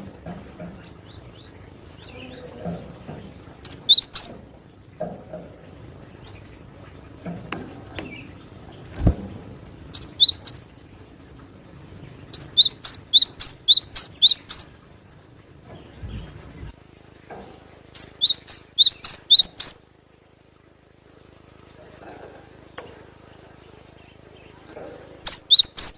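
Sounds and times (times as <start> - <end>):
bird singing high notes: 3.6 - 4.3, 10.0 - 10.6, 12.3 - 14.7, 18.0 - 19.8, 25.2 - 25.9.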